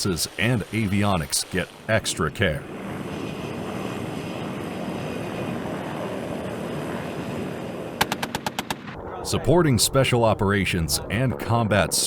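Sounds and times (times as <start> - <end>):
helicopter in flight: 2.6 - 9.2.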